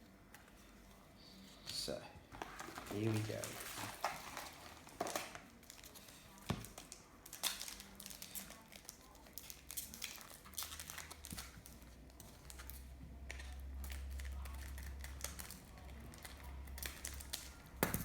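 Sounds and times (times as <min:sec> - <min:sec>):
cards shuffling: 0:02.4 - 0:05.4
foil pack tearing and crinkling: 0:02.4 - 0:18.0.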